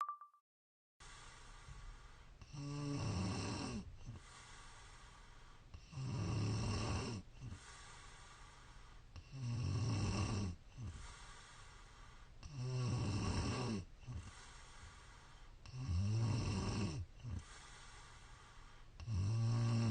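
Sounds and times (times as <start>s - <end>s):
woman snoring: 2.4s - 3.9s, 5.8s - 7.6s, 9.2s - 11.1s, 12.4s - 14.4s, 15.7s - 17.5s, 19.0s - 19.9s.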